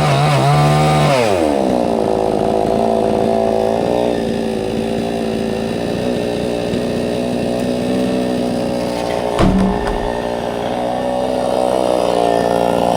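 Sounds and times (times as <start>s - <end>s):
chainsaw engine running: 0.1s - 9.3s
heavy thump: 9.4s - 10.7s.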